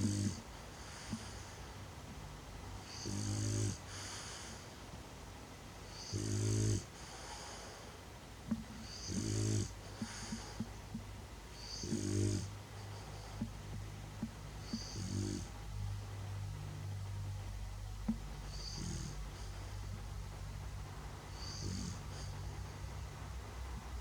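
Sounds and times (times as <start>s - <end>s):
dog snoring with wheezy whistle: 0.0s - 1.6s, 2.8s - 4.7s, 5.9s - 7.9s, 8.5s - 10.7s, 11.5s - 13.6s, 14.6s - 15.7s, 18.4s - 20.0s, 21.2s - 22.8s.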